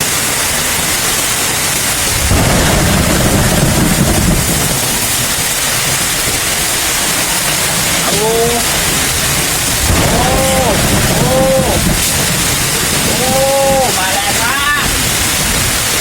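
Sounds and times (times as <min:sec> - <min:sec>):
rain hissing: 0:00.0 - 0:16.0
wind: 0:00.0 - 0:16.0
low rumble: 0:02.0 - 0:06.8, 0:08.6 - 0:14.0.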